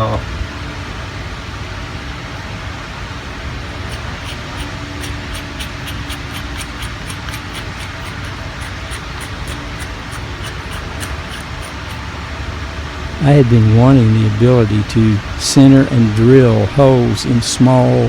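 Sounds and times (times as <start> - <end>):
benchtop lathe running: 3.4 - 12.3
light regular ticking: 3.6 - 12.5.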